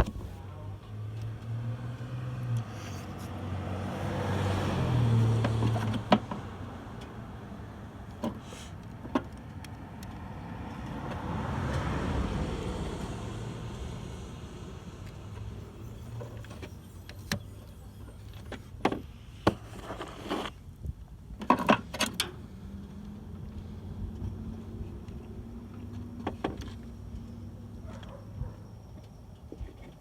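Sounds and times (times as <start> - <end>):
low traffic hum: 0.0 - 30.0
car passing: 1.6 - 7.6, 9.6 - 18.8.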